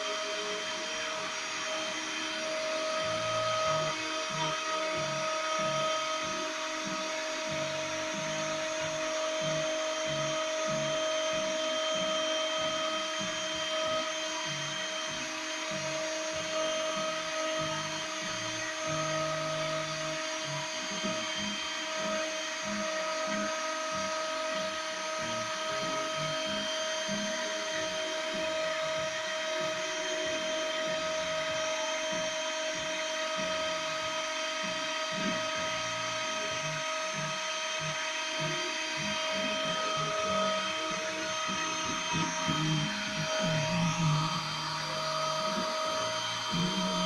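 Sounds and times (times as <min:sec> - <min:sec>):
high-pitched mill spindle: 0:00.0 - 0:47.0
stepper motors humming: 0:35.2 - 0:47.0.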